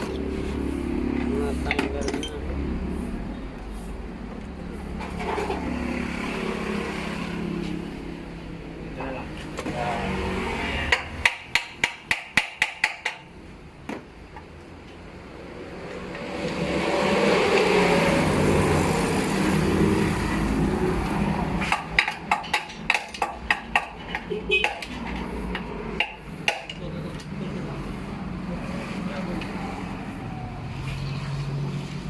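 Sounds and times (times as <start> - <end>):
vehicle passing: 0.0 - 11.2, 15.3 - 22.0, 25.0 - 32.0.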